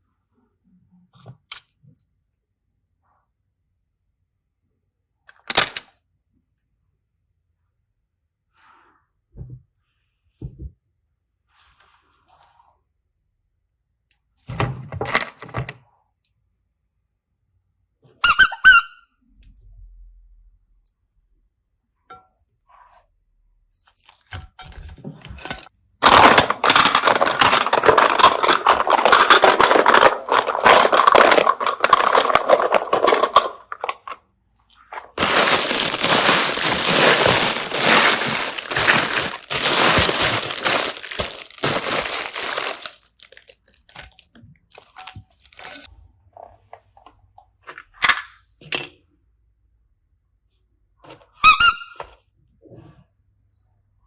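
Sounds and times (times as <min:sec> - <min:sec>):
slime crackling and popping: 0:35.0 - 0:45.9.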